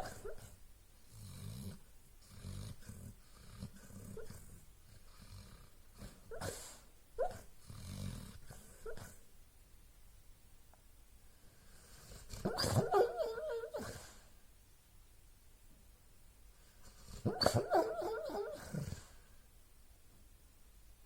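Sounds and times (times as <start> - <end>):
dog snoring: 1.1 - 9.2, 11.6 - 14.0, 16.8 - 19.2
dog whimpering: 12.4 - 14.0, 17.2 - 19.0.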